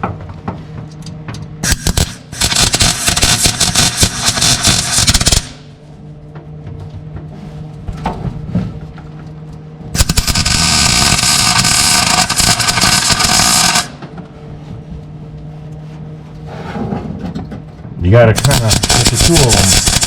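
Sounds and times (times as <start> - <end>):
steady low hum: 0.0 - 20.0
welding arc crackle: 1.6 - 5.8, 10.0 - 14.0, 18.2 - 20.0.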